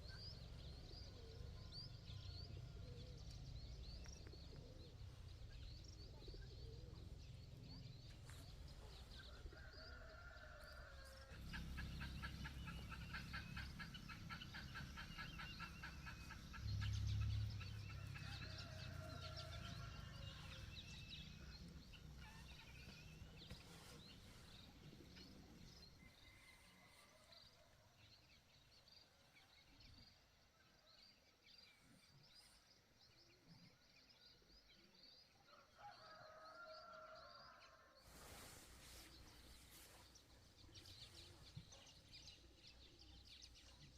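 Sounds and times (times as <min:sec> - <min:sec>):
small birds chirping: 0:00.0 - 0:30.5
chickens calling: 0:11.4 - 0:20.7.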